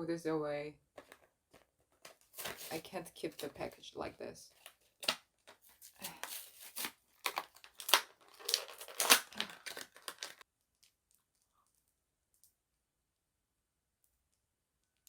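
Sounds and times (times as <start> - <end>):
packaging torn and crumpled: 2.0 - 3.5, 4.6 - 11.0.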